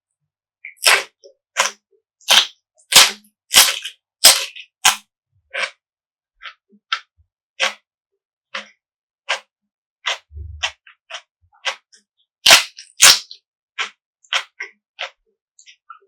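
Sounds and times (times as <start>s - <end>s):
chewing crisp food: 0.7s - 5.0s, 5.6s - 5.8s, 7.6s - 7.8s, 10.1s - 16.0s.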